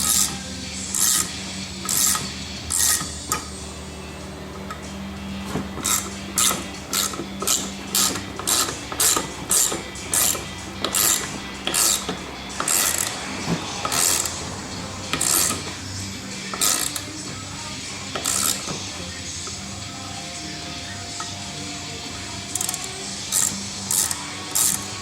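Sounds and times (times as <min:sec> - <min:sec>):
ratchet wrench clicking: 0:00.0 - 0:03.6, 0:05.8 - 0:14.4, 0:15.0 - 0:15.8, 0:16.4 - 0:17.2, 0:18.1 - 0:19.6, 0:22.4 - 0:25.0.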